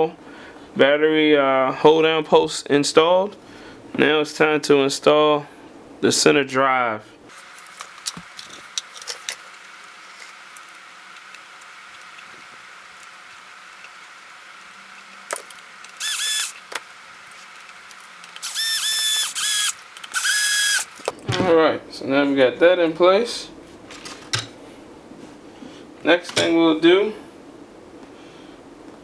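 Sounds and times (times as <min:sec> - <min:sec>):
electric screwdriver whining: 0:07.4 - 0:21.1
small parts clicking and knocking: 0:07.4 - 0:21.2.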